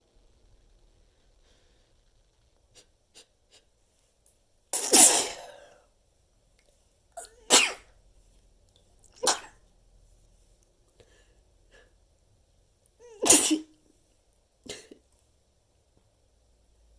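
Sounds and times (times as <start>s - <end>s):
stifled sneezes: 4.8s - 5.8s, 7.2s - 7.9s, 9.2s - 9.6s, 13.0s - 13.8s.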